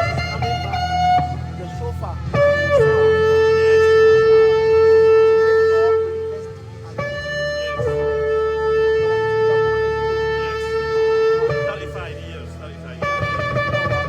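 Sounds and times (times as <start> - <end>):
ram's horn blasts: 0.0 - 14.0.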